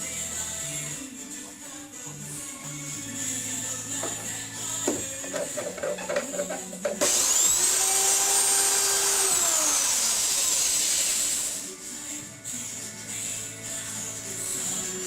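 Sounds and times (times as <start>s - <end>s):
power tool motor whining: 4.9s - 11.6s.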